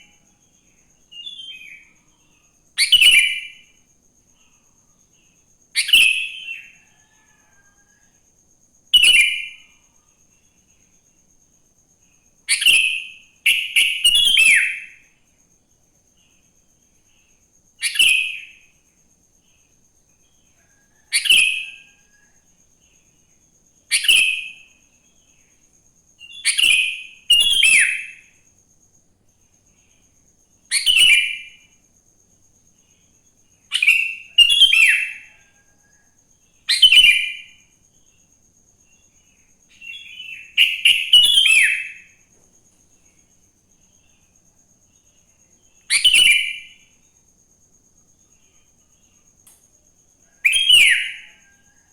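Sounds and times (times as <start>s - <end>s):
bulbul chirpy calls: 33.7s - 35.6s, 39.7s - 42.2s, 45.8s - 46.8s, 50.4s - 51.7s.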